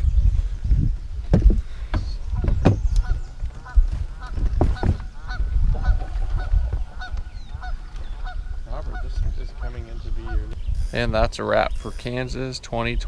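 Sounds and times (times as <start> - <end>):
geese honking: 2.4 - 11.1.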